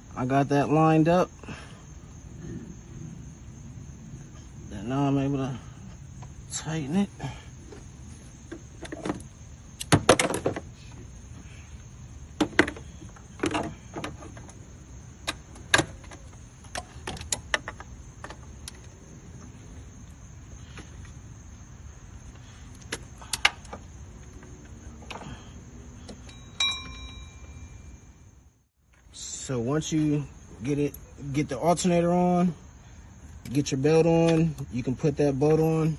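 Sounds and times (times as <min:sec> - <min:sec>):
metal tool clinks: 0:26.2 - 0:27.9.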